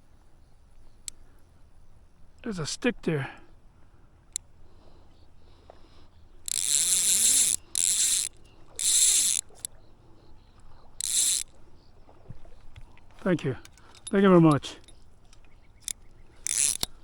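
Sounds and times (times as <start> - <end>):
fly reel drag ratcheting: 5.2 - 9.8, 10.6 - 11.6, 13.6 - 17.0.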